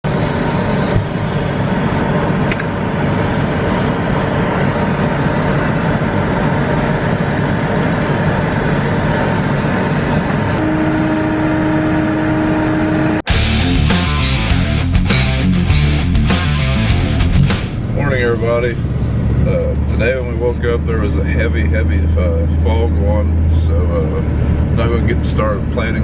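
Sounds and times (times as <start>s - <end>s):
steady tone: 0.1s - 20.8s
diesel engine running under load: 0.1s - 26.0s.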